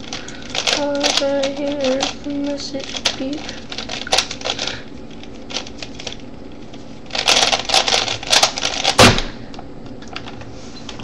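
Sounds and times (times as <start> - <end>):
loud thump: 9.0 - 9.4.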